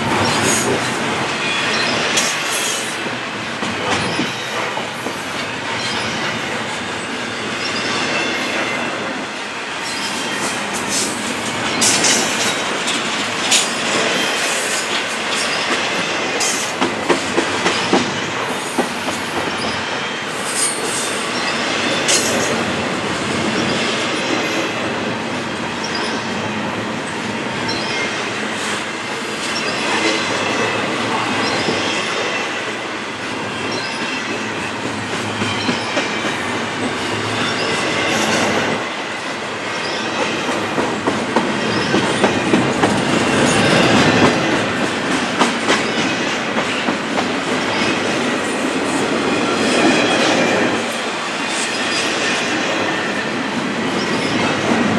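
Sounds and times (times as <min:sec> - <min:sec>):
freight train rolling past: 0:00.0 - 0:54.9
train wheel squeal: 0:00.0 - 0:54.9
wheels clacking over rail joints: 0:39.7 - 0:54.9.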